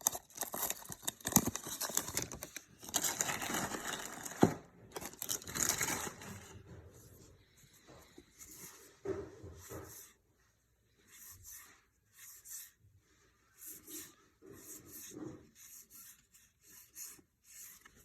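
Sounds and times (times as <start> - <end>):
trading cards rubbing and rustling: 0.0 - 6.6.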